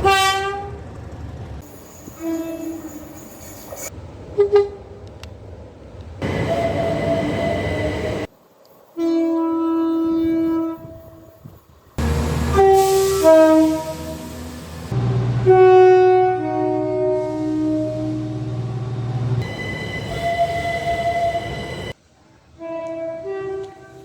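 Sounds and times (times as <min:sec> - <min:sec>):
train horn blast: 0:00.0 - 0:00.8, 0:02.2 - 0:03.0, 0:09.0 - 0:11.4, 0:12.0 - 0:18.8, 0:22.6 - 0:24.0
two-tone train horn: 0:00.0 - 0:00.8, 0:02.1 - 0:03.1, 0:09.0 - 0:11.4, 0:12.0 - 0:18.8, 0:19.4 - 0:22.0, 0:22.6 - 0:24.0
train running by: 0:00.0 - 0:08.9, 0:10.0 - 0:22.0.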